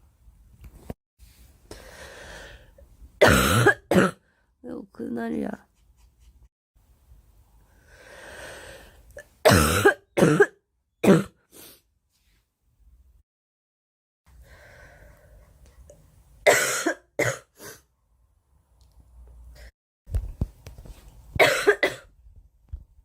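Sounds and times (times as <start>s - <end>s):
girl coughing: 3.2s - 4.2s, 9.5s - 11.4s, 16.5s - 17.5s, 21.4s - 22.1s
breath in: 7.8s - 9.0s.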